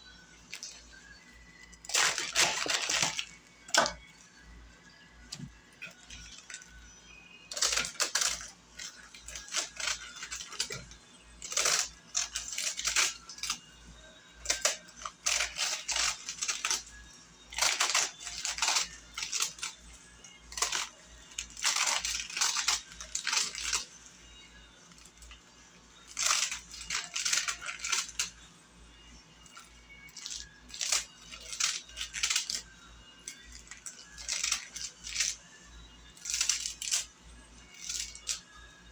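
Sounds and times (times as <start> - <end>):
lettuce crunching and tearing: 1.8 - 4.0, 7.5 - 13.6, 14.4 - 19.8, 20.5 - 23.9, 26.0 - 28.3, 29.5 - 32.6, 33.3 - 35.4, 36.2 - 37.1, 37.7 - 38.4.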